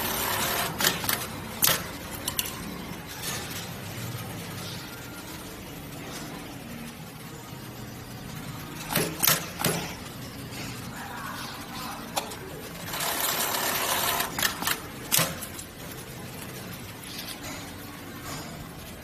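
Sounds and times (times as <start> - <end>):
sewing machine hum: 0.0 - 1.4, 12.7 - 15.3.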